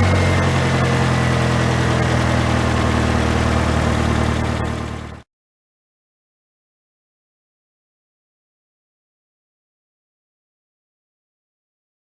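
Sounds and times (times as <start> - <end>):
car engine idling: 0.0 - 5.2.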